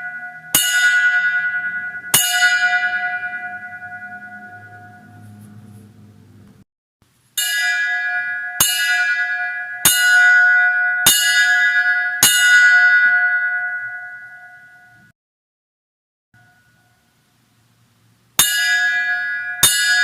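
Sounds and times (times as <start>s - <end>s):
bell ringing: 0.0s - 5.4s, 7.4s - 15.1s.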